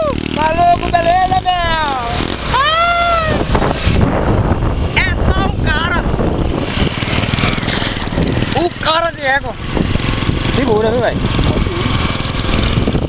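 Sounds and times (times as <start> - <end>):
small motorcycle engine: 0.0 - 3.4, 6.5 - 13.0
wind buffeting microphone: 0.0 - 13.0
rider whooping: 2.5 - 3.6.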